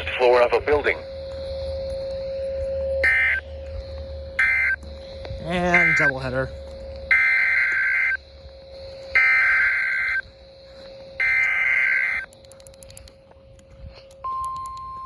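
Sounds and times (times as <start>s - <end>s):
steady single-pitch attention tone: 0.0s - 12.4s
two-tone digital data squawk: 3.0s - 3.5s, 4.3s - 8.2s, 9.0s - 10.2s, 11.2s - 12.4s.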